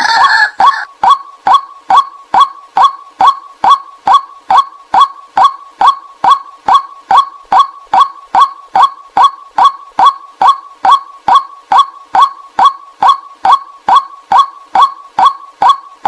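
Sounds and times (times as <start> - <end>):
waterhen calling: 0.0 - 2.0.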